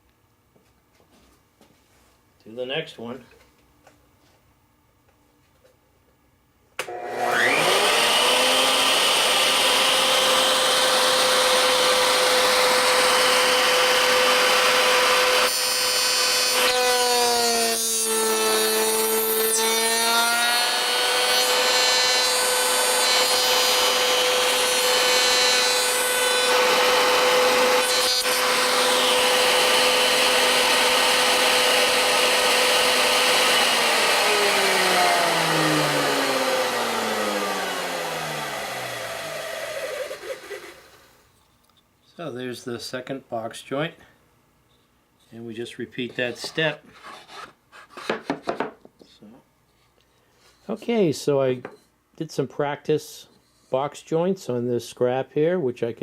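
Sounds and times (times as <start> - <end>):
router bit cutting wood: 6.8 - 41.1
router spinning: 7.0 - 17.2, 20.3 - 41.0.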